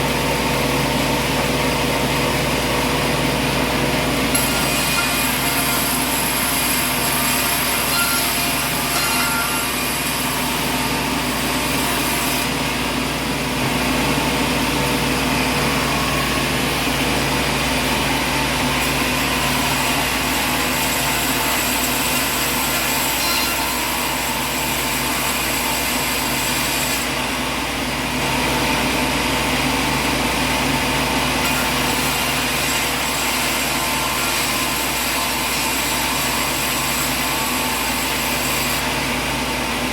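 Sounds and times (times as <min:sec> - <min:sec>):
sawmill machinery whining drone: 0:00.0 - 0:39.9.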